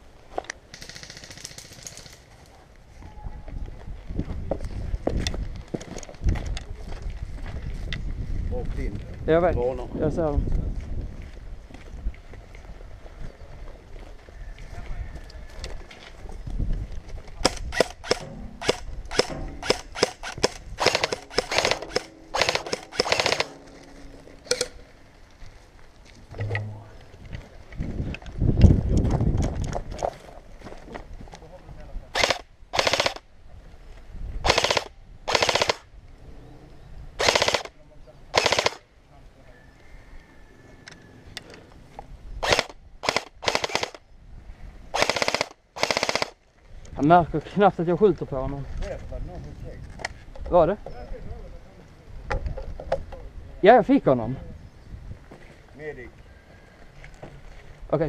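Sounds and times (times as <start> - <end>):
airsoft guns firing: 17.4 - 23.7, 32.2 - 33.2, 34.5 - 35.9, 37.2 - 37.7, 38.4 - 38.8, 42.4 - 44.0, 45.0 - 46.4.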